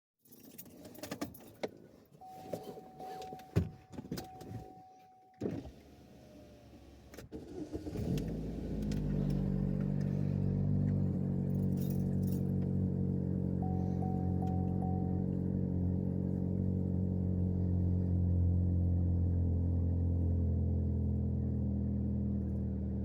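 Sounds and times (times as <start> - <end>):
car engine cranking and running: 1.0 - 23.0
keys jangling: 11.6 - 12.6
electronic warning tone: 13.6 - 15.5.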